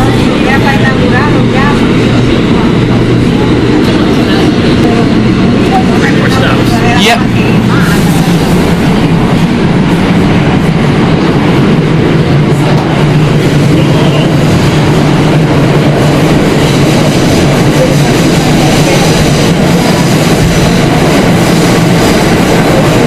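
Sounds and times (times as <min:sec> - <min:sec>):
subway wheels rumbling on rail: 0:00.0 - 0:23.0.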